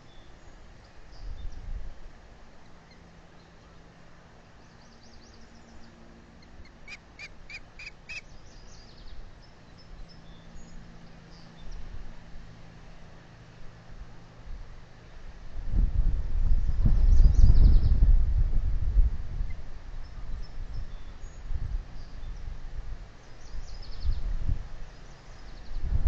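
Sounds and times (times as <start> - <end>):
low wind rumble: 0.0 - 26.0
osprey chirping: 4.7 - 8.9.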